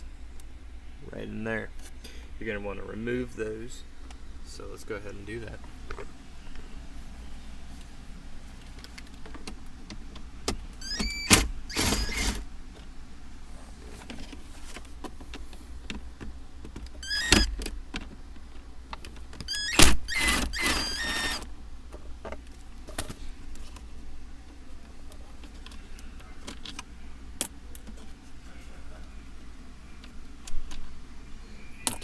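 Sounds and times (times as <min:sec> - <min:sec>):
power driver whining: 0:08.8 - 0:13.0, 0:15.2 - 0:18.2, 0:19.0 - 0:21.6
tool and screws clinking: 0:19.5 - 0:21.4.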